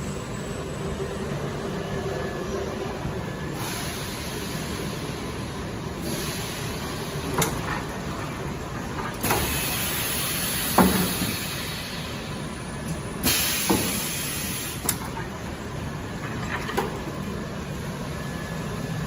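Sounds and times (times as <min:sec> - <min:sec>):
steady background noise: 0:00.0 - 0:19.0
pneumatic air hiss: 0:03.6 - 0:07.6, 0:09.2 - 0:12.4, 0:13.2 - 0:15.2.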